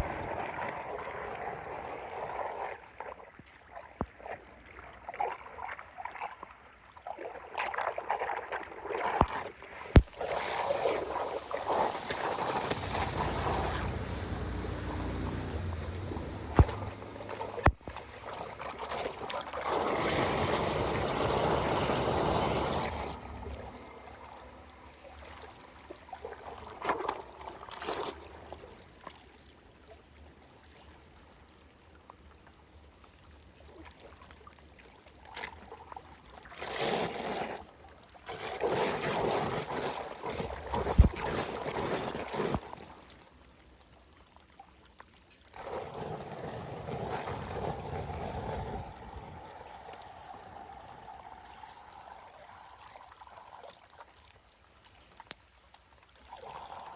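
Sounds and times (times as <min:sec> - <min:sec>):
water splashing and rushing: 0:10.0 - 0:29.0, 0:45.5 - 0:56.9.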